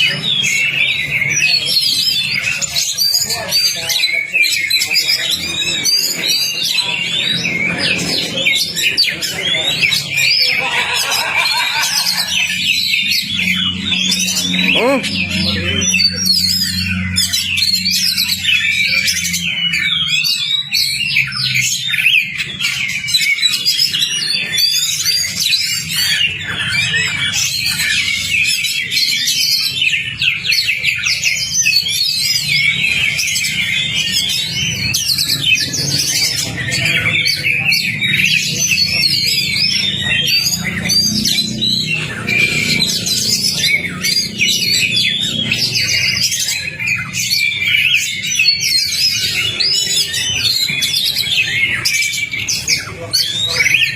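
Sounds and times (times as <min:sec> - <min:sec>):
bird singing chirps and whistles: 0:12.4 - 0:53.9.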